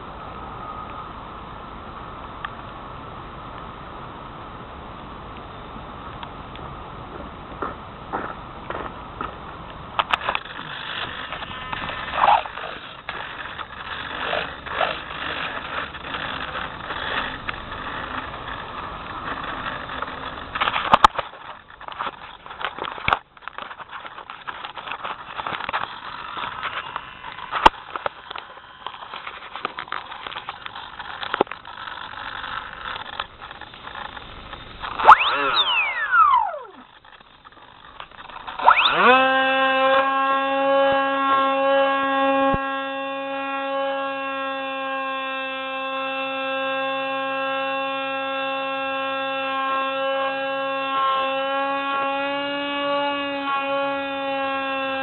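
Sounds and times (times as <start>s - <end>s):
sharp clicks: 10.0s - 39.2s
electric motor whine: 10.1s - 55.0s
rough rushing noise: 10.2s - 39.6s.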